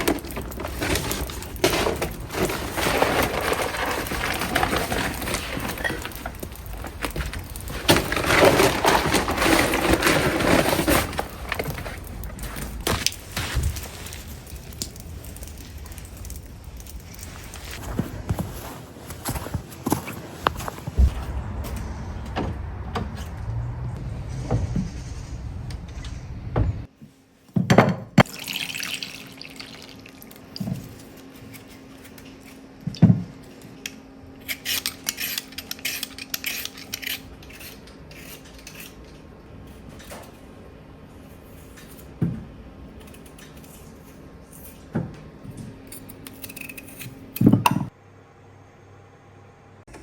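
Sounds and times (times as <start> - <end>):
water running from tap: 28.3 - 30.3.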